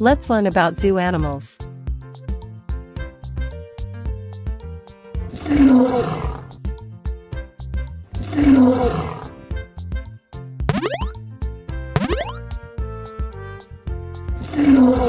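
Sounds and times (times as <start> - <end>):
bouncy children's music: 0.0 - 15.0
big cat roaring: 5.4 - 6.5, 8.4 - 9.3.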